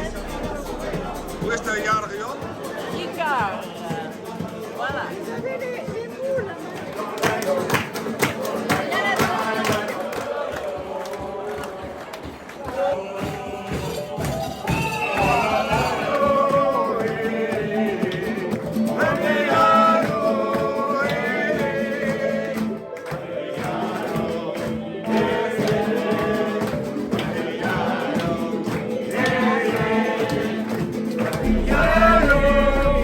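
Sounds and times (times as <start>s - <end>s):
steady low tone: 0.0s - 2.4s, 31.4s - 33.0s
music with voices singing: 0.0s - 33.0s.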